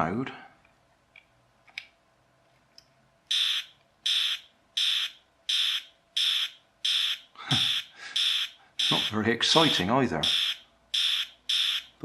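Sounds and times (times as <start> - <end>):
toy gun electronic firing sound: 3.3 - 11.9.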